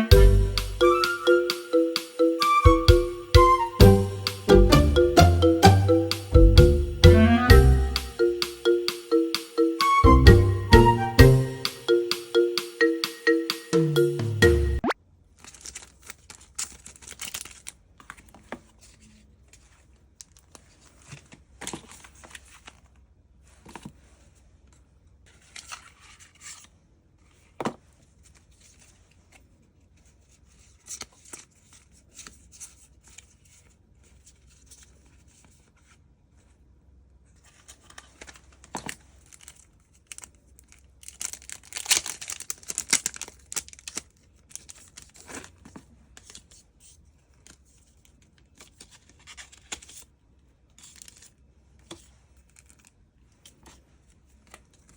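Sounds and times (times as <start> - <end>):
packaging tearing and crinkling: 15.4 - 17.8, 38.8 - 45.6.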